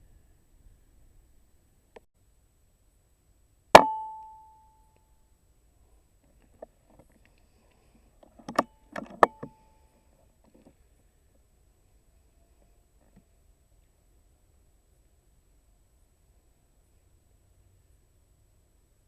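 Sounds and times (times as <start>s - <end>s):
metallic clicks and knocks: 8.2s - 9.6s.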